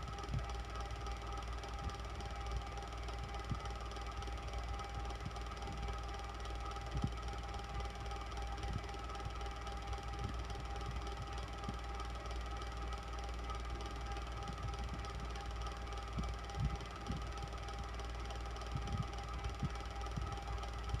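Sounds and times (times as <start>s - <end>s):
electric fan running: 0.0s - 21.0s.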